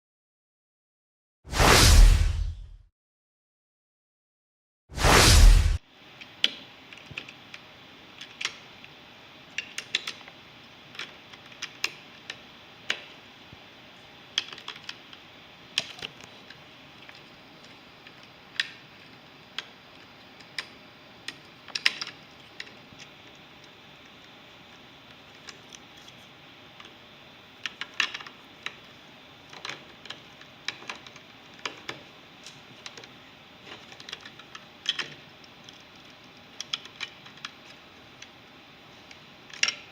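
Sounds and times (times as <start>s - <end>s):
plastic bricks clicking: 14.3s - 17.3s, 19.5s - 23.1s, 27.6s - 38.3s.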